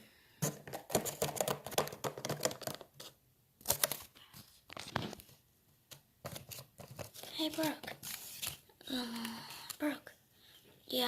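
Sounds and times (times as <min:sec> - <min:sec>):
plastic toys clicking on hard surface: 0:00.7 - 0:02.9.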